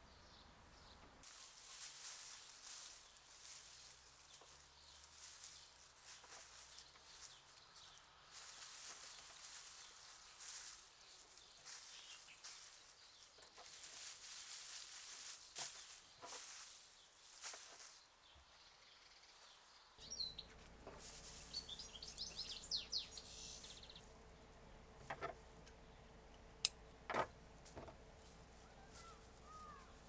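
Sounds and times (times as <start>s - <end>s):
soft hiss: 1.2s - 18.8s, 21.0s - 24.1s
faint bird chirps: 21.5s - 24.1s, 28.6s - 30.0s.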